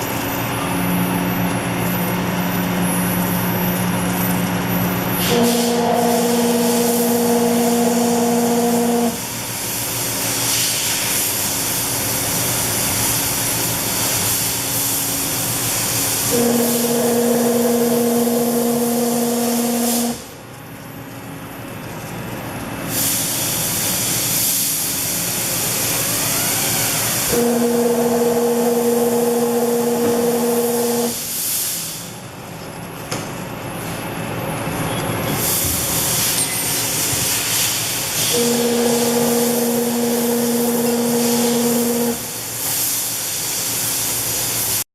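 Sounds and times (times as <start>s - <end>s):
humming tone: 0.3s - 9.4s, 16.3s - 20.3s, 26.2s - 31.3s, 38.3s - 42.4s
loud engine hiss: 5.0s - 20.4s, 22.9s - 32.3s, 35.3s - 44.9s.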